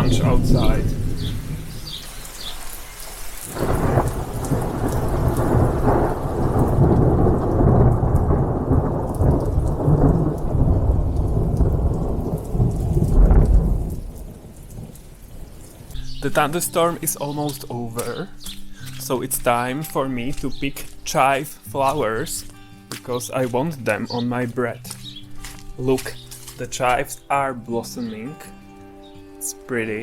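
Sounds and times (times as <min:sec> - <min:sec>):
rolling thunder: 0:00.0 - 0:02.7, 0:03.5 - 0:15.9
rain falling: 0:00.0 - 0:30.0.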